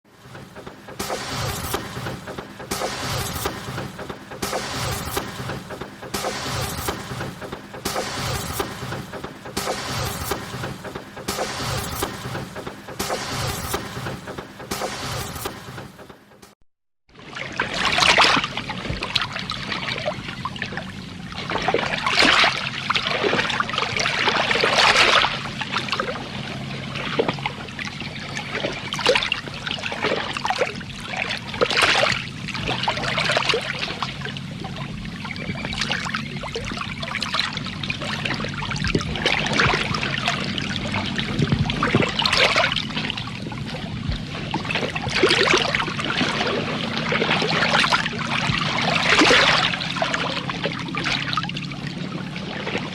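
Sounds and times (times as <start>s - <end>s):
low hum: 0.1s - 16.6s
water splashing and trickling: 17.1s - 52.9s.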